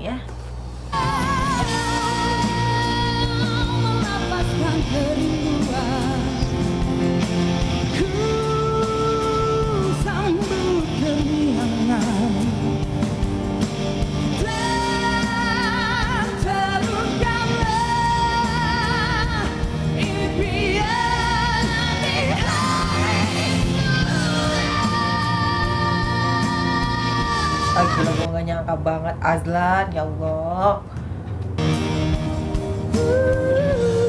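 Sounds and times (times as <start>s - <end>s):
pop ballad duet singing: 1.0s - 13.1s, 14.3s - 28.3s, 32.9s - 34.0s
band playing: 1.0s - 28.3s, 31.6s - 34.0s.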